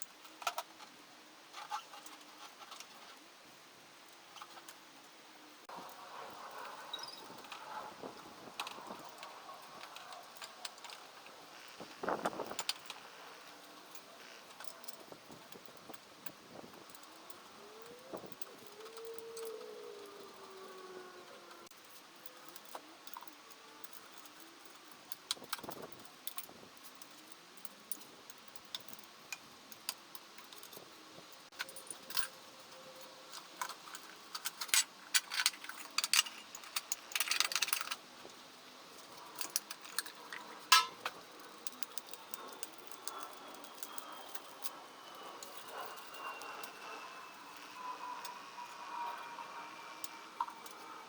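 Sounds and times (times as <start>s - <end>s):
metal tools clinking: 33.0s - 38.0s, 39.0s - 49.2s
metal rattle: 39.2s - 51.0s.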